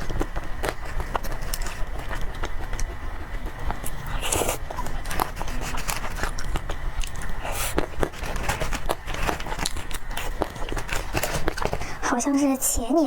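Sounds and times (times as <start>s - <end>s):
chewing and mouth clicks: 0.0s - 11.8s
rustling scrapes: 7.4s - 12.0s.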